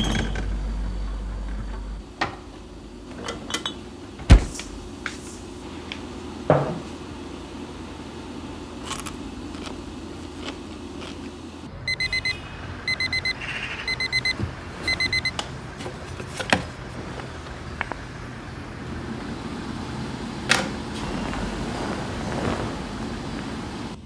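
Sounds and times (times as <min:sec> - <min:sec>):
steady low hum: 0:00.0 - 0:24.0
short high beeps: 0:11.9 - 0:15.4.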